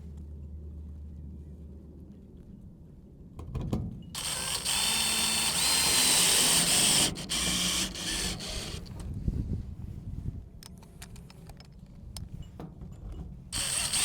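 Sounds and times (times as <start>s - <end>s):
power drill driving screws: 4.2s - 8.9s, 13.6s - 14.0s.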